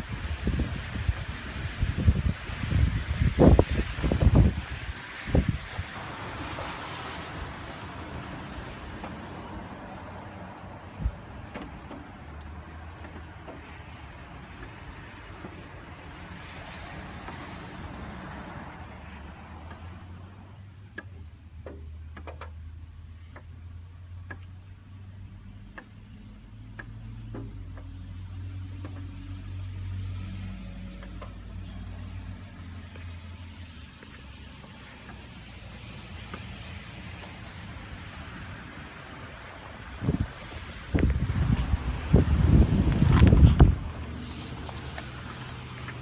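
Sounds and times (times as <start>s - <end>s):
car engine idling: 17.7s - 46.0s
faint light ticks: 20.8s - 29.4s.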